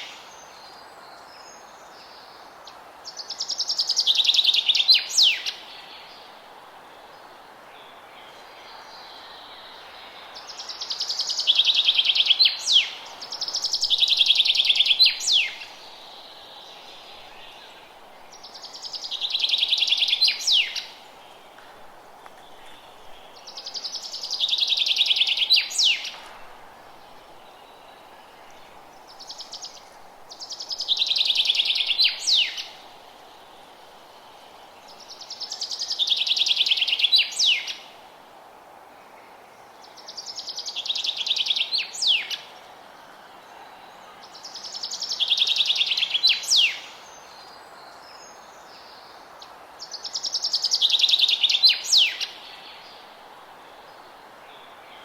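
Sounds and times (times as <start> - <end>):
faint steady hiss: 0.0 - 55.0
songbird trilling song: 3.2 - 6.1, 7.8 - 21.1, 22.3 - 26.2, 27.2 - 32.8, 34.9 - 37.9, 39.9 - 42.6, 43.6 - 49.2, 49.8 - 53.2.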